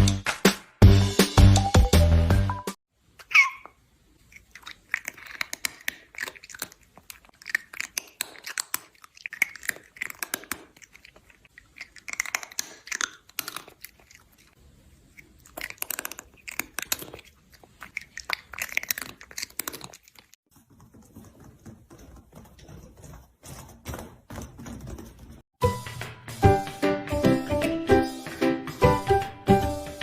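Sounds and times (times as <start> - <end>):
animal chewing crunchy food: 4.2 - 23.6.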